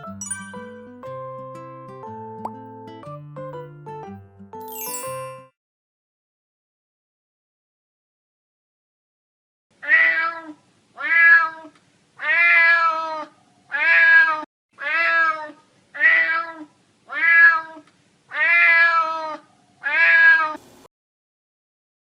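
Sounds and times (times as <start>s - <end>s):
cat meowing: 9.8s - 20.6s.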